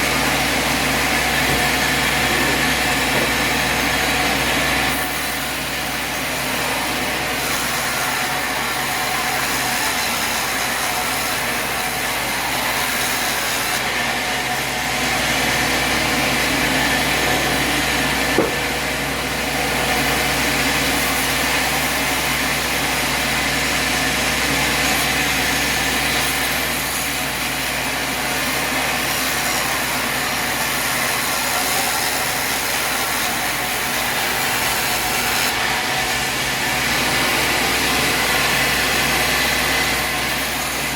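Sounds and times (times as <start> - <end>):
sawmill engine running: 0.0 - 40.9.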